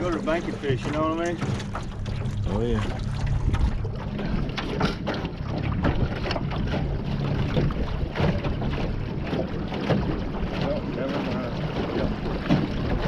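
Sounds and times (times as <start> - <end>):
small boat motor humming: 0.0 - 13.0
wind on microphone: 1.8 - 10.6.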